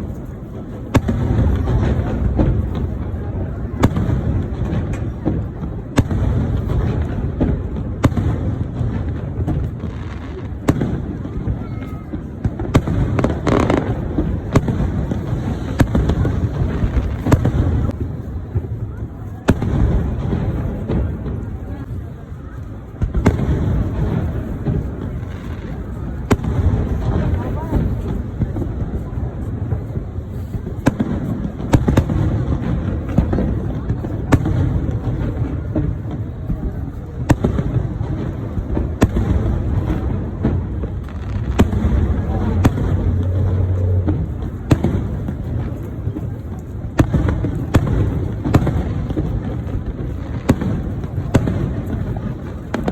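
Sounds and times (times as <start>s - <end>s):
fireworks bangs: 0.0s - 52.9s
fireworks crackle: 0.0s - 52.9s
low rumble of distant booms: 23.0s - 52.9s.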